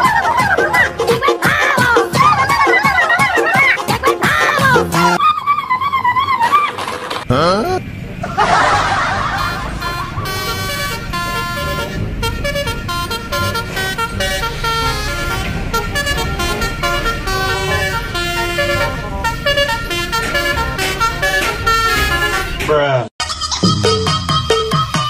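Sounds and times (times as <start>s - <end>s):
truck musical horn tune: 4.2s - 5.2s, 7.5s - 22.8s
low engine rumble: 7.3s - 22.7s.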